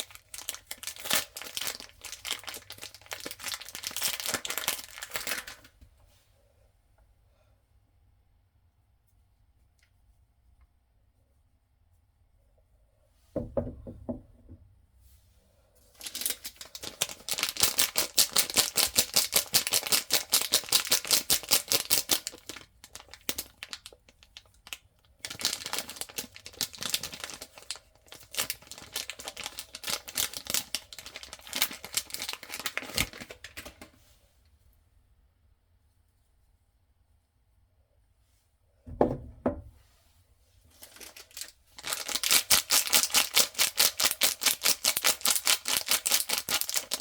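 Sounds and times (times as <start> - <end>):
wrapper tearing and crinkling: 0.0 - 5.7, 16.0 - 33.9, 40.7 - 47.0.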